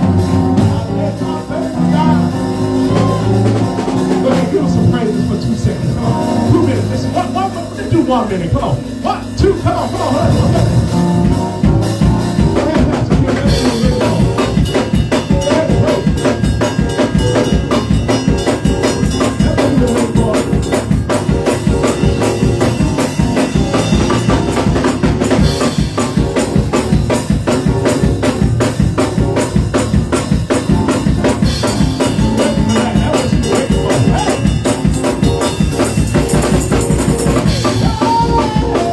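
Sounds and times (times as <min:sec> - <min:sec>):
bass: 0:00.0 - 0:38.9
drum kit: 0:00.0 - 0:38.9
tambourine: 0:13.7 - 0:38.4.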